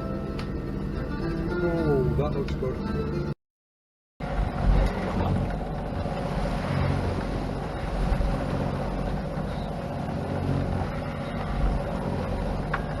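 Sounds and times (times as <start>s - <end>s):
rushing noise with low rumble: 4.2s - 13.0s.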